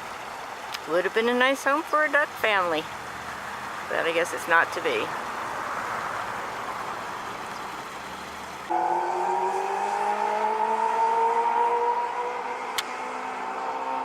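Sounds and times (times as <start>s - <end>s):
car engine accelerating: 4.8s - 14.0s.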